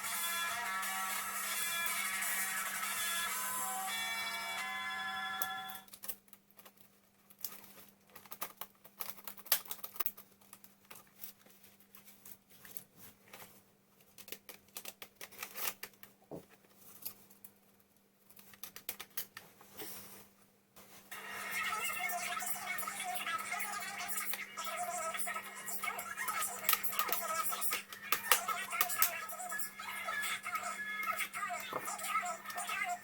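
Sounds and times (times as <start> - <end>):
laptop parts clicking: 8.1 - 11.0, 18.3 - 19.4.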